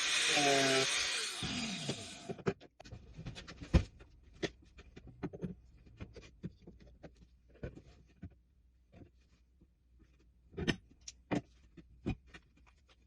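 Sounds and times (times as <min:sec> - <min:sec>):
objects knocking and clicking: 0:01.8 - 0:09.3, 0:10.0 - 0:13.0.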